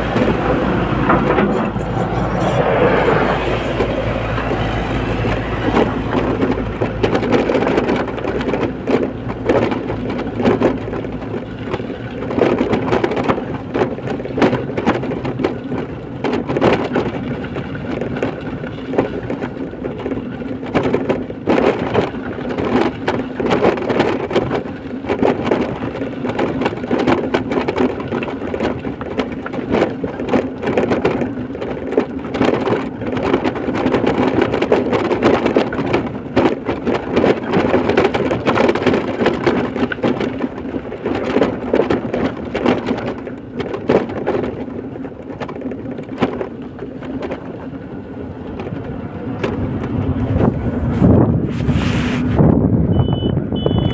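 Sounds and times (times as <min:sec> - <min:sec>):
vehicle engine hum: 0:00.0 - 0:53.9.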